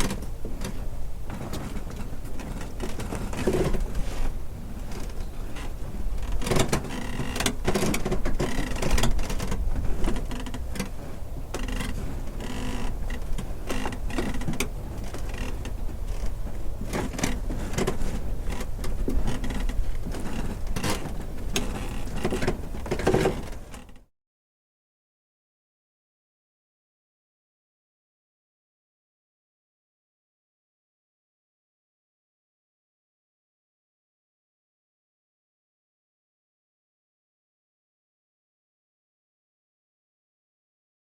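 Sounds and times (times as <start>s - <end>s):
wooden dock creaking: 0.0s - 24.1s.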